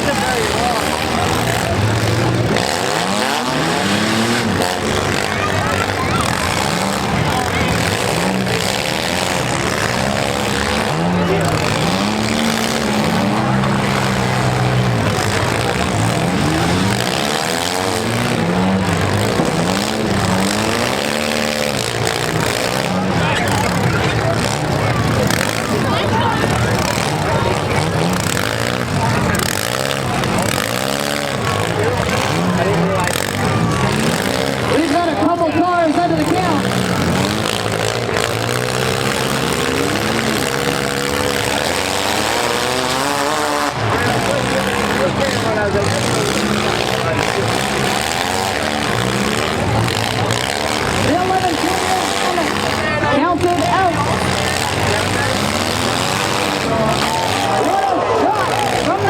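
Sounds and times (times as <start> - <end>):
car engines revving: 0.0 - 59.0.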